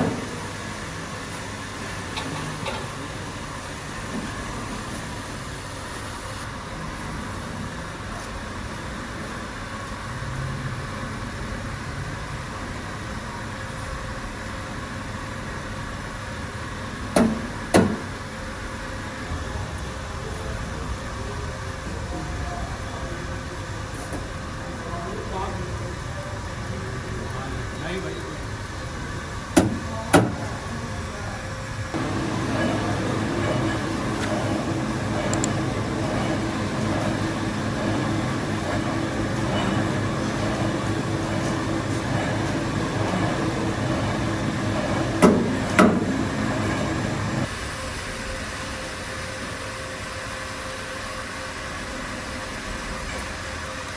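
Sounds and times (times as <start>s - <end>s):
factory machinery running: 0.0s - 53.9s
machine humming: 28.4s - 49.0s.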